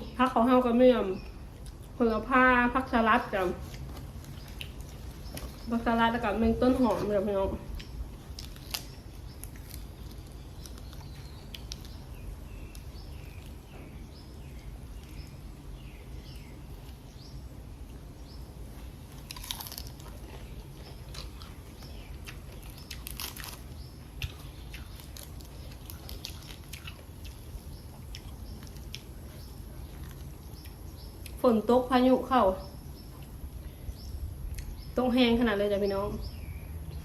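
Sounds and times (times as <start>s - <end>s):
person crunching raw vegetables: 7.7s - 13.6s, 18.6s - 31.4s.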